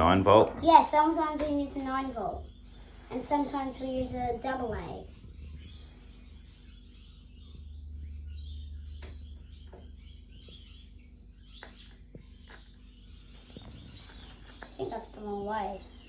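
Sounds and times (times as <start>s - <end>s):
faint bird chirps: 0.7s - 16.0s
low hum: 2.0s - 16.0s.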